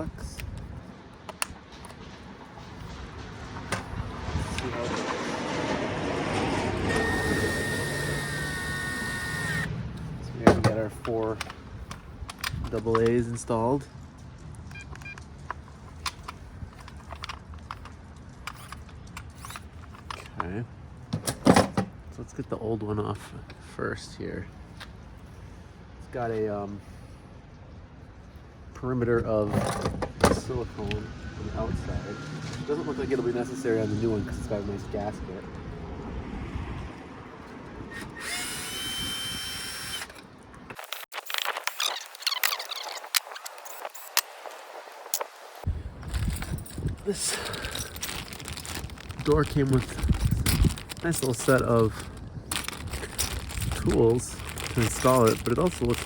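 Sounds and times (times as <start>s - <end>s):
cordless drill running: 6.9s - 9.7s, 37.9s - 40.2s
clicks and scrapes on lock: 14.7s - 20.4s, 40.1s - 44.5s.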